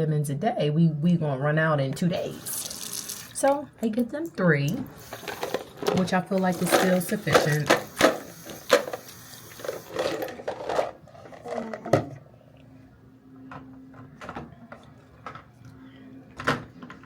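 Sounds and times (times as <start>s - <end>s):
faint steady hum: 0.0s - 17.0s
household items clicking and knocking: 5.0s - 12.2s.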